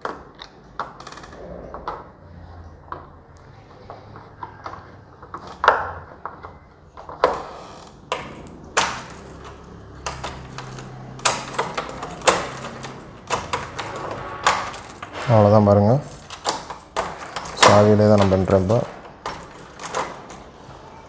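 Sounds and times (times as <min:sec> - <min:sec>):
keys jangling: 0:08.1 - 0:21.0
door lock metal clicks: 0:16.2 - 0:20.5.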